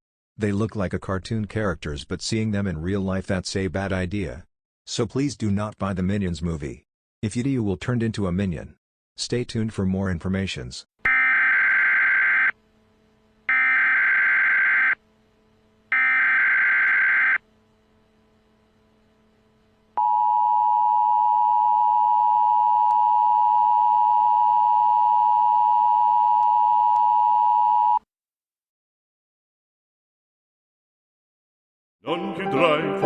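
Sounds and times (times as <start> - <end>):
harsh digital data bursts: 13.5 - 15.0, 15.9 - 17.4.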